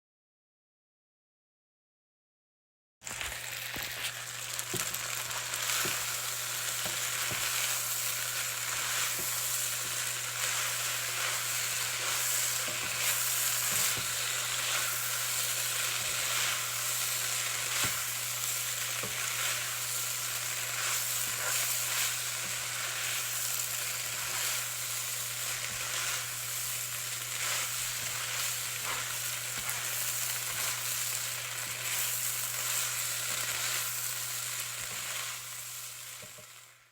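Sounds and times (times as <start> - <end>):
food sizzling in a pan: 3.0 - 36.9
utensil scraping a pan: 3.8 - 33.8.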